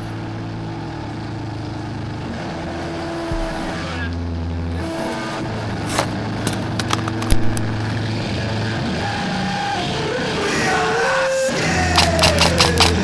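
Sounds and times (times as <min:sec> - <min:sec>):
sharp clicks: 0:12.0 - 0:13.0.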